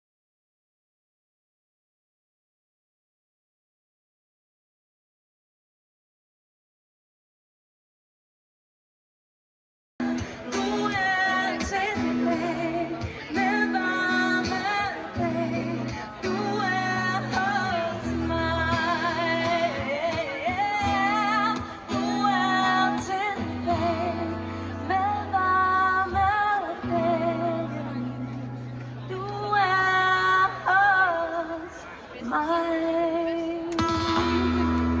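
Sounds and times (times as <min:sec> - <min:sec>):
person singing: 0:29.1 - 0:35.0.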